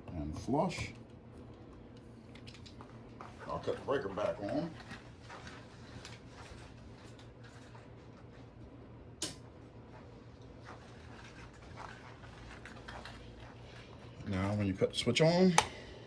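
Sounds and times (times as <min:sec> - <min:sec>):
small room noises: 0:00.0 - 0:16.0.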